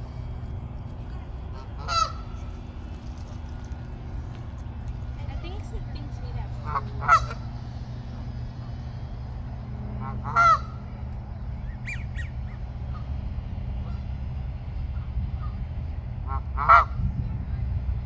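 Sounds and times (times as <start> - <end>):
steady low rumble: 0.0 - 18.0
geese honking: 1.5 - 2.6, 6.4 - 7.6, 10.0 - 10.9, 16.2 - 17.0.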